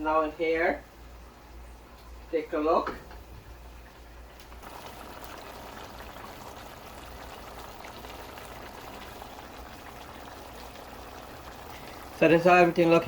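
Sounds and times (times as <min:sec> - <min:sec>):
curry bubbling in a pot: 0:04.5 - 0:13.0.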